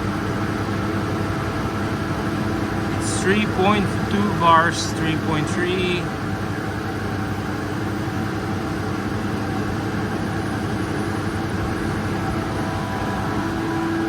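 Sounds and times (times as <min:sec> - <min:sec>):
air compressor droning: 0:00.0 - 0:06.8, 0:10.1 - 0:14.0.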